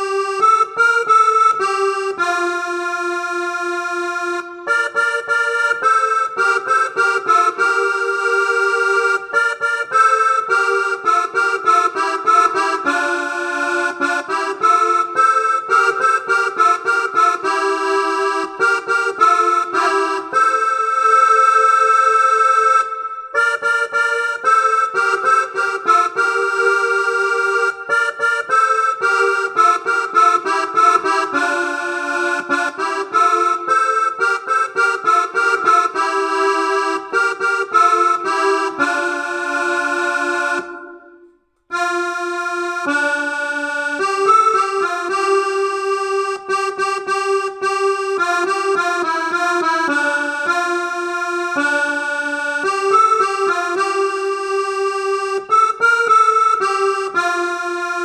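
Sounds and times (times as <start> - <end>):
keyboard playing accordion-like melody: 0.0 - 58.0.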